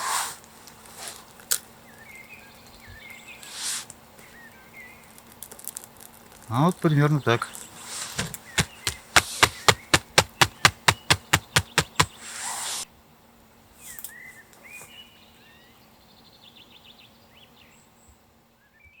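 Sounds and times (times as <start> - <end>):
rapid sharp clicks: 8.6 - 12.1
faint bird chirps: 13.8 - 19.0.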